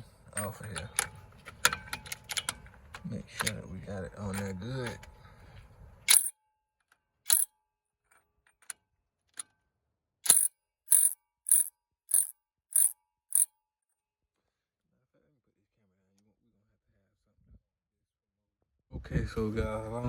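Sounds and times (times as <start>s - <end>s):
socket wrench clicking: 6.1s - 6.3s, 7.3s - 7.5s, 10.3s - 13.5s.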